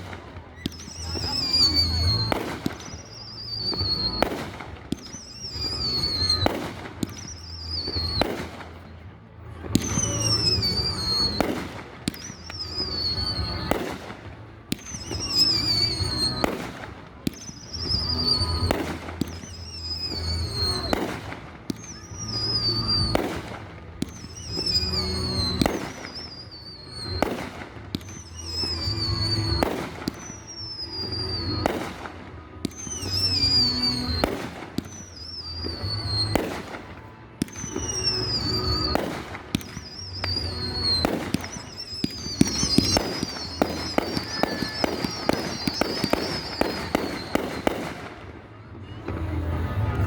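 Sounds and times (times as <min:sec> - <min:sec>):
descending firework whistles: 0:00.0 - 0:08.8, 0:09.6 - 0:50.0
firework bangs and booms: 0:00.0 - 0:50.0.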